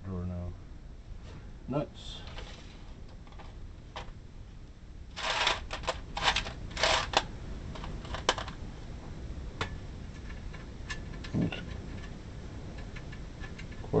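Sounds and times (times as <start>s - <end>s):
nuts rattling in a drawer: 5.2s - 8.6s.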